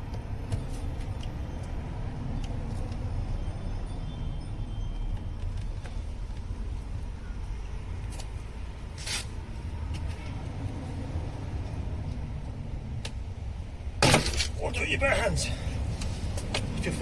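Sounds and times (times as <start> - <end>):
steady low rumble: 6.0 - 17.0.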